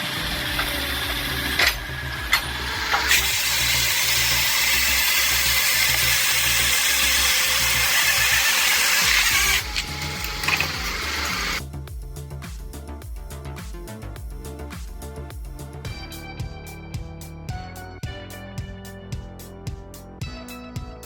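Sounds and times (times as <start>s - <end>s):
saw cutting through wood: 0.0s - 11.6s
background music with low beat: 0.0s - 21.0s.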